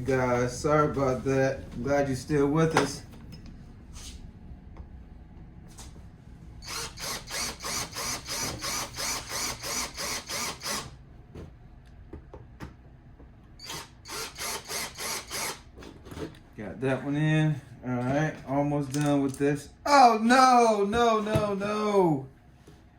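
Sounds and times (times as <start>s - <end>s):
cordless power screwdriver pulsing: 6.6s - 10.9s, 13.6s - 15.6s.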